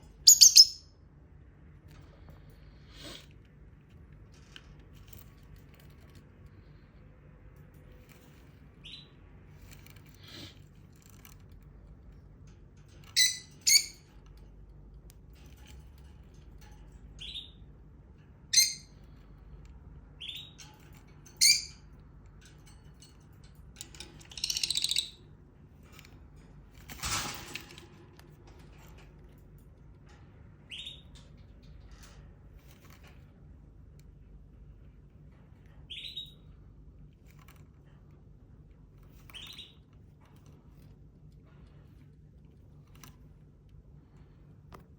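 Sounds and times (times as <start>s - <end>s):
lovebird chirping: 0.3s - 0.9s.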